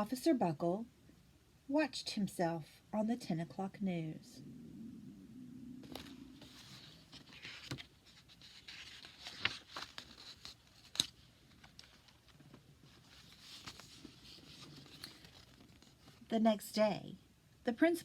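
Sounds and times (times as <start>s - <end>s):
paper rustling: 5.8s - 16.2s.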